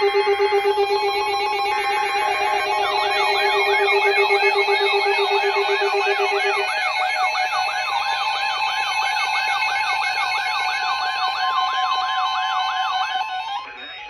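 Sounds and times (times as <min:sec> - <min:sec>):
steady single warning tone: 0:00.0 - 0:07.8
steady beeping tones: 0:00.0 - 0:11.0
siren-like sweeping alarm tone: 0:00.0 - 0:13.8.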